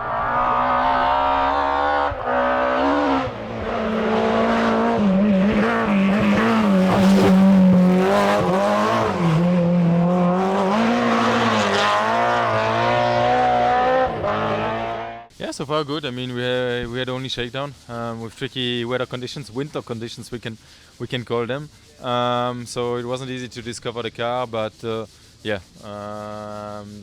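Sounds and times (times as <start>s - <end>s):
rally car engine revving: 0.0s - 15.3s.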